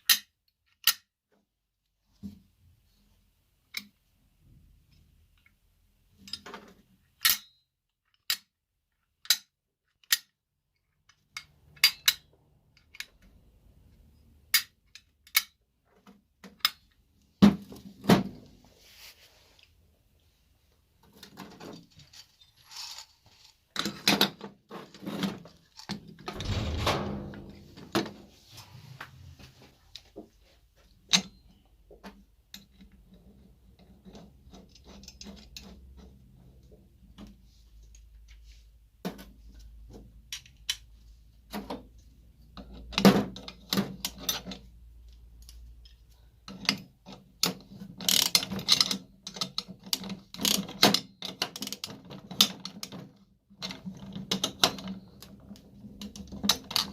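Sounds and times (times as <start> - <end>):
metal parts rattling and scraping: 21.4 - 24.1, 24.8 - 28.6.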